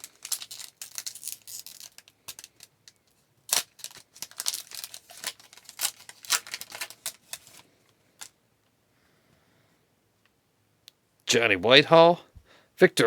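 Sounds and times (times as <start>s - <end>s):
cards and wrapper clicking and rustling: 0.0s - 8.4s.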